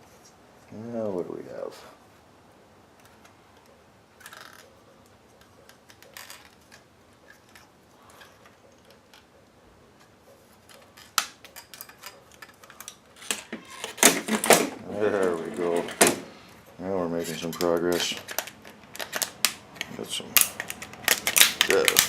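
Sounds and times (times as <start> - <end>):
plastic and metal parts clicking: 10.0 - 16.2, 17.2 - 22.0.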